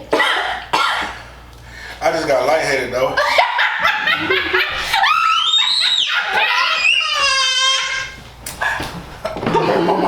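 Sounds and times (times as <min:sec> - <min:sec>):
person screaming: 0:05.0 - 0:08.2.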